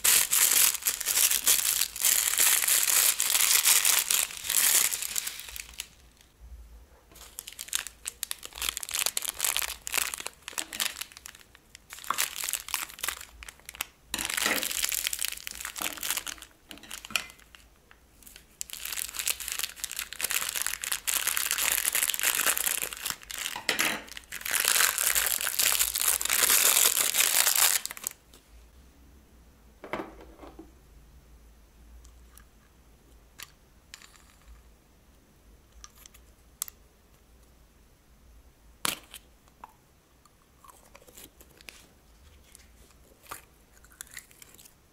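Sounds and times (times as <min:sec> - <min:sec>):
plastic bags crinkling: 0:00.0 - 0:06.3, 0:07.2 - 0:28.2.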